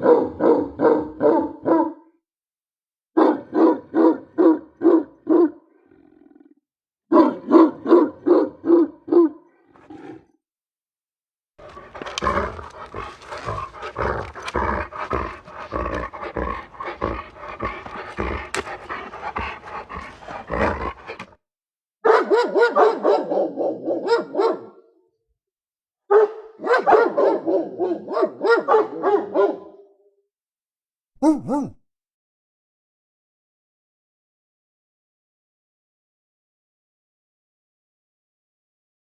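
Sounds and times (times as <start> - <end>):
dogs barking angrily: 0.0 - 2.0, 3.2 - 5.6, 7.1 - 9.5, 11.6 - 21.4, 22.1 - 24.8, 26.1 - 29.8.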